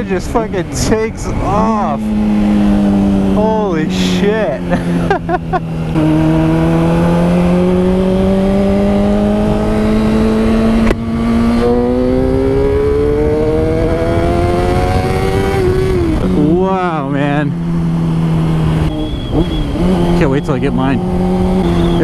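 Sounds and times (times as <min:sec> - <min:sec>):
motorcycle engine accelerating: 0:00.0 - 0:22.0
wind rush: 0:07.2 - 0:20.1.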